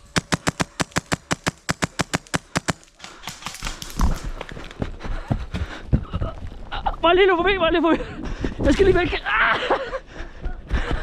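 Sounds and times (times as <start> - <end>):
airsoft rifle rapid fire: 0.0 - 4.5
rustling: 0.2 - 4.9.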